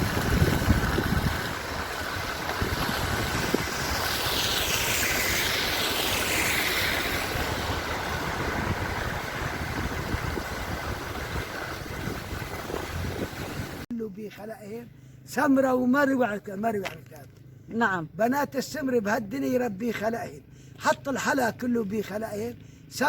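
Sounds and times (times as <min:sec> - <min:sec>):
passing vehicle hiss: 0:00.0 - 0:12.1
tyre and wind noise while driving: 0:00.0 - 0:13.9.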